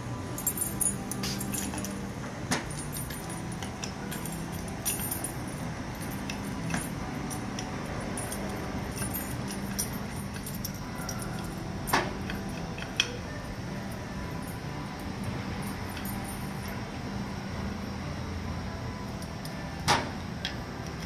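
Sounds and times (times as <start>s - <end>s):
metal parts and tools clinking: 0.0s - 17.0s
steady low hum: 0.0s - 21.0s.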